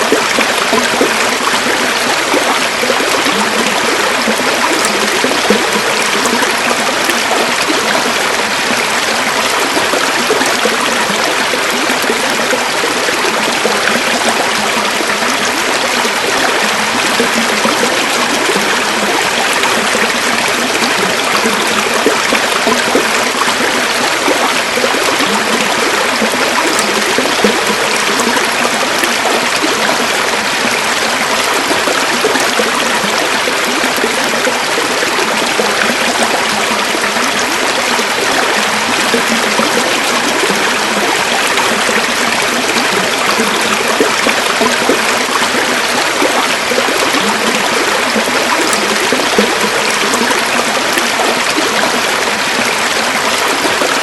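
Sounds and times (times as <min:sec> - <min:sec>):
river water babbling over stones: 0:00.0 - 0:54.0.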